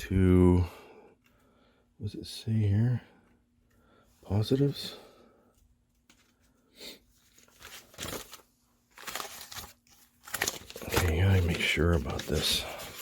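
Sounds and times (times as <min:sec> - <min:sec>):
plastic parts rustling and crinkling: 0:07.2 - 0:13.0.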